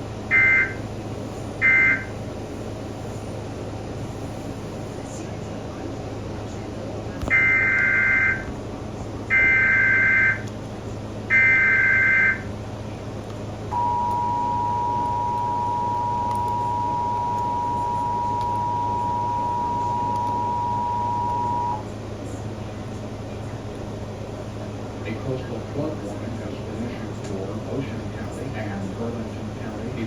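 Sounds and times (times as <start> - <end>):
two-tone attention signal: 0.3 - 0.8, 1.6 - 2.1, 7.3 - 8.5, 9.3 - 10.4, 11.3 - 12.5, 13.7 - 21.8.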